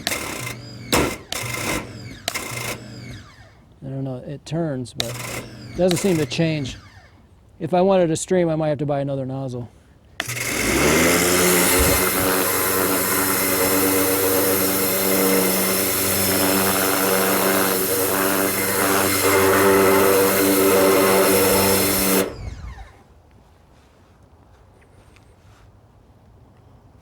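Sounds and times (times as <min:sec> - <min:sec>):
pressure washer motor hum: 0:00.0 - 0:03.8, 0:04.9 - 0:07.3, 0:10.2 - 0:23.0
water jet hissing: 0:10.2 - 0:22.5.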